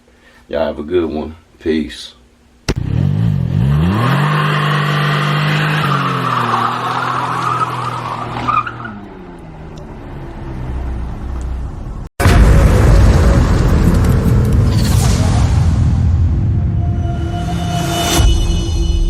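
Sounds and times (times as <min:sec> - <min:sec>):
car engine revving: 0:02.7 - 0:11.7
screeching tyre-like noise: 0:03.6 - 0:10.0.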